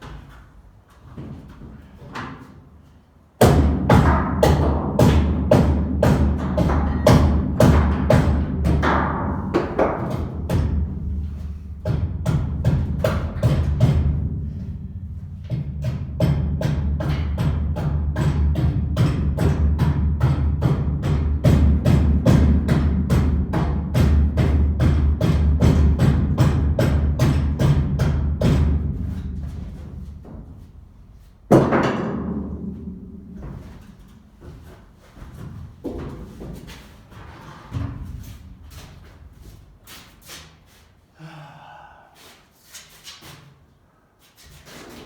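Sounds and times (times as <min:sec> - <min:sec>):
percussive beat: 0:03.4 - 0:11.2, 0:11.8 - 0:29.4
low bass line: 0:10.6 - 0:22.5.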